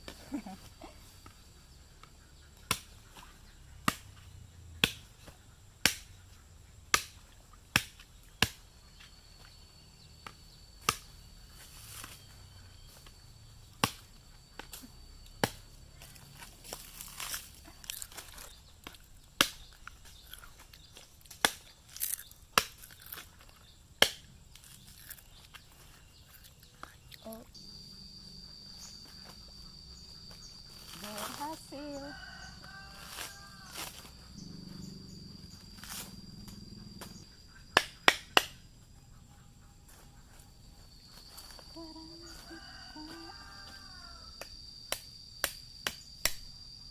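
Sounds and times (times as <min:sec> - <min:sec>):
high-pitched insect drone: 0:24.6 - 0:37.7, 0:38.9 - 0:46.9.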